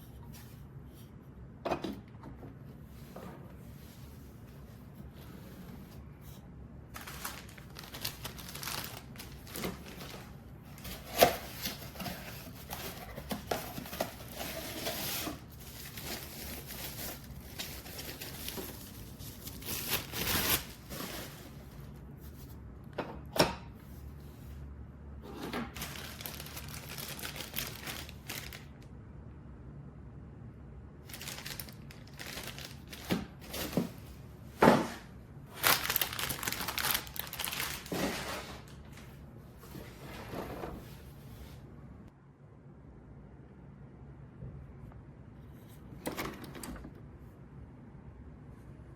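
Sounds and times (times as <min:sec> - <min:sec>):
crinkling and rustling: 0:02.5 - 0:22.6, 0:25.3 - 0:28.8, 0:31.1 - 0:41.6.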